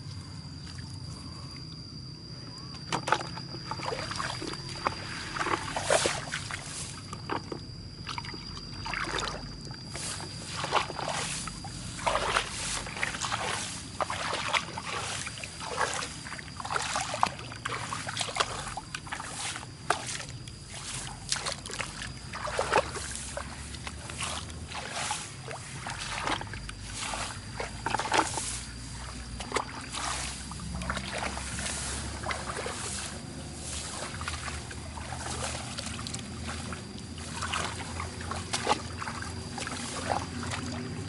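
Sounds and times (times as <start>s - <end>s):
thin steady high tone: 0.0s - 41.0s
hands splashing in muddy water: 8.1s - 41.0s.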